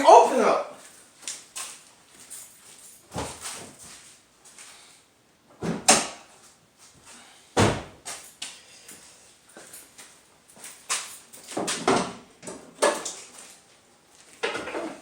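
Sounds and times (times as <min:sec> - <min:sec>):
car hood slamming shut: 0:07.6 - 0:07.9.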